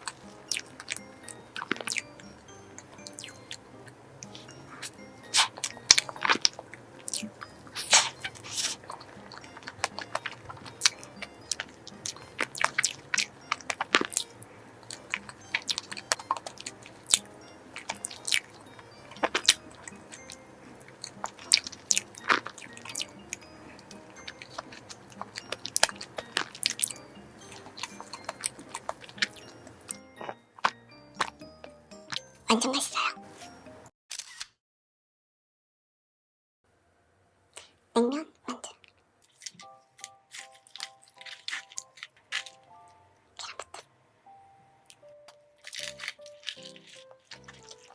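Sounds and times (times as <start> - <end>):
chewing and biting: 0.0 - 33.2, 38.8 - 43.8, 44.9 - 47.9
quiet background music: 0.0 - 33.9, 38.0 - 47.9
wet mouth clicks: 4.2 - 11.0, 43.4 - 43.8.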